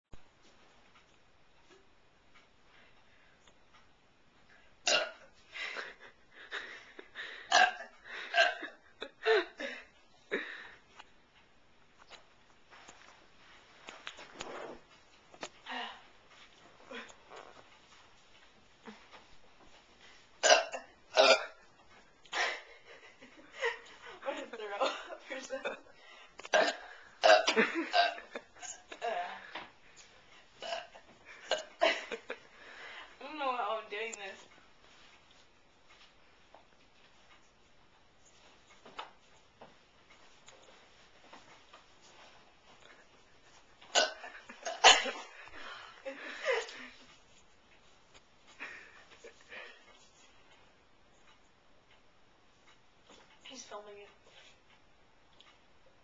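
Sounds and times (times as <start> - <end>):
loud burps: 4.8 - 5.2, 7.5 - 8.6, 20.4 - 21.6, 26.5 - 28.3, 30.6 - 31.7, 43.9 - 45.1
person belching: 20.4 - 21.5, 30.6 - 30.9.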